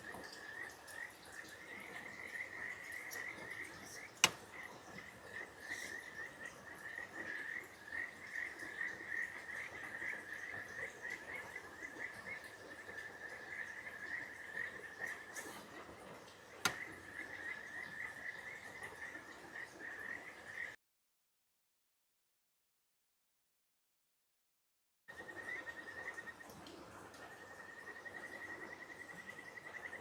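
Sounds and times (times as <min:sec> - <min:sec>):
frogs trilling: 0:00.0 - 0:15.7, 0:16.6 - 0:20.8, 0:27.3 - 0:30.0
sharp click: 0:04.2 - 0:04.4, 0:16.7 - 0:16.9.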